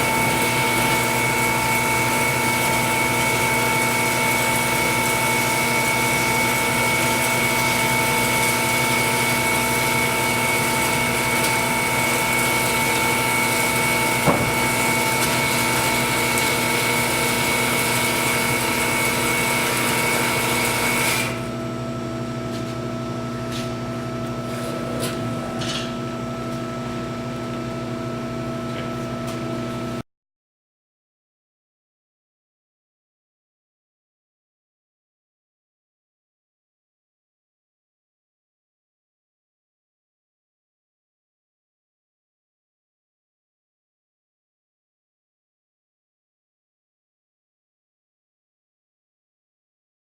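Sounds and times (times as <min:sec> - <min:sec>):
band saw running: 0:00.0 - 0:21.5.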